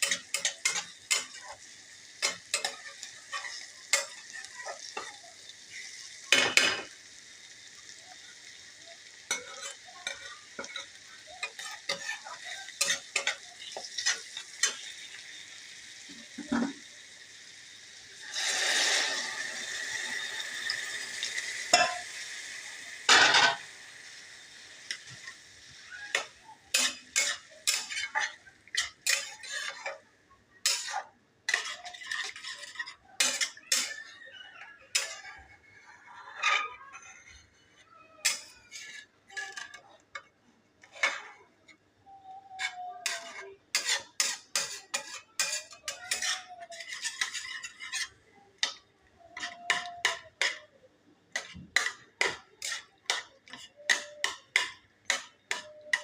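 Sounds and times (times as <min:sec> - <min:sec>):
spatula scraping a pan: 0:00.0 - 0:06.9, 0:09.0 - 0:16.8, 0:24.9 - 0:30.0, 0:30.6 - 0:50.7, 0:51.3 - 0:56.0
food sizzling in hot oil: 0:00.0 - 0:35.8, 0:38.2 - 0:41.4, 0:42.6 - 0:50.7, 0:51.3 - 0:56.0.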